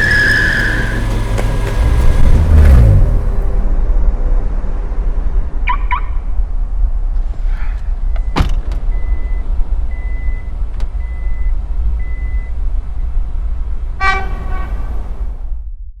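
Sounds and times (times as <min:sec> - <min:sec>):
vehicle horn honk: 0:00.0 - 0:03.5, 0:14.0 - 0:15.3.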